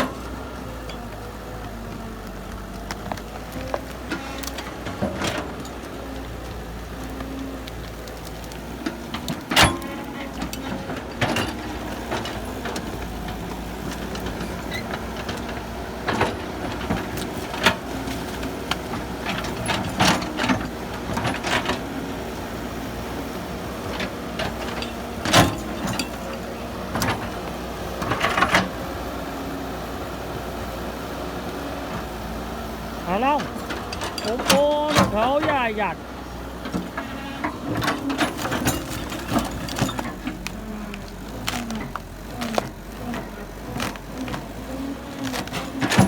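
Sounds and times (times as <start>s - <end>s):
diesel engine running: 0.0s - 46.0s
metallic clanks and knocks: 8.8s - 21.8s, 23.7s - 27.4s, 33.1s - 35.9s, 36.6s - 44.5s.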